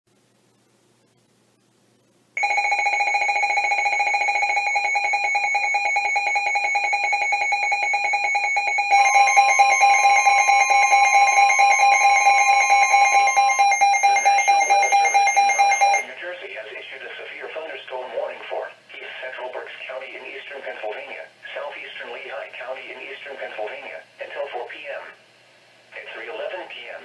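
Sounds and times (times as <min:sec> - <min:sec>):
electronic alarm tones: 0:02.4 - 0:16.1.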